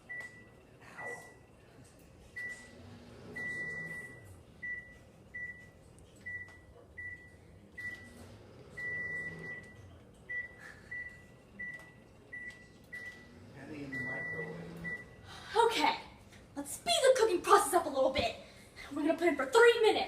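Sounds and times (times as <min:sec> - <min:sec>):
microwave oven low hum: 0:00.0 - 0:16.6
microwave keypad beeping: 0:02.4 - 0:15.2.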